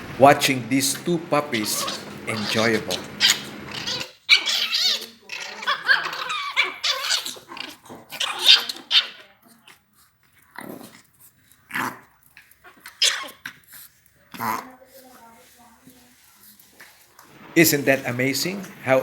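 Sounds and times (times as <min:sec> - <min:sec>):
puppies growling and yapping: 0:01.0 - 0:15.1.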